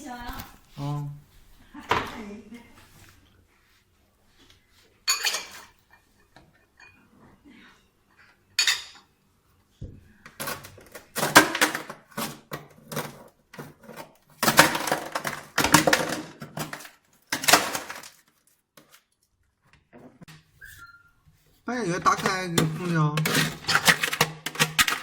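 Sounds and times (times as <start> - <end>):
bowls clattering in freezer: 5.1 - 5.9, 10.4 - 19.0, 21.9 - 25.0.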